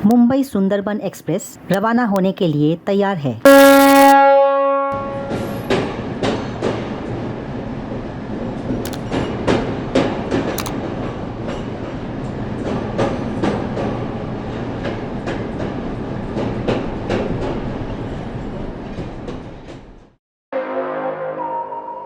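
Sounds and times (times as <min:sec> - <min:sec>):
train rumbling: 0:05.0 - 0:20.2.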